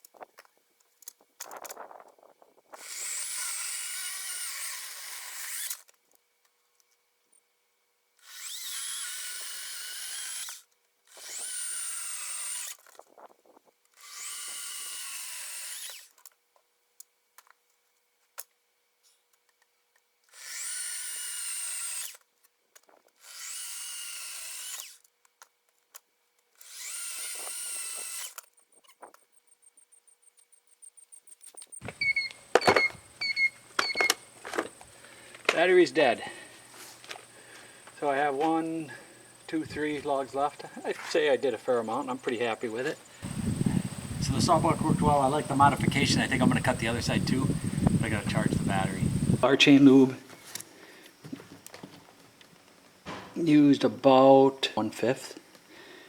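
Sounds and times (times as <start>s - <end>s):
electric chainsaw motor running: 2.8s - 5.8s, 8.2s - 12.8s, 14.0s - 16.1s, 20.4s - 22.2s, 23.2s - 25.0s, 26.6s - 28.4s, 31.8s - 49.5s
rapid high ticking: 43.0s - 49.4s.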